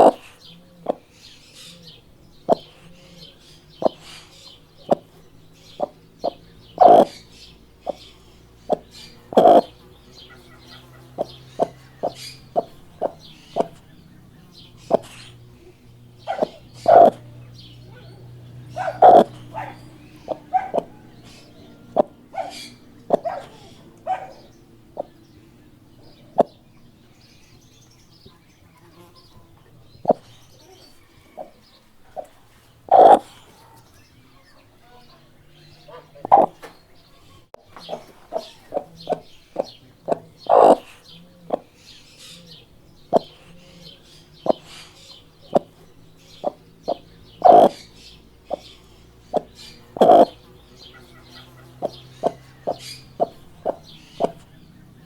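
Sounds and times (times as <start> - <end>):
short animal calls: 0.0 - 26.6, 28.8 - 33.8, 37.3 - 54.5
hens clucking: 0.0 - 55.0.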